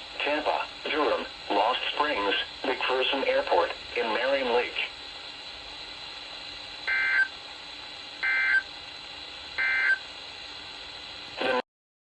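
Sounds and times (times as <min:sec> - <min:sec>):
radio hiss: 0:00.0 - 0:07.4, 0:08.2 - 0:08.7, 0:11.2 - 0:11.6.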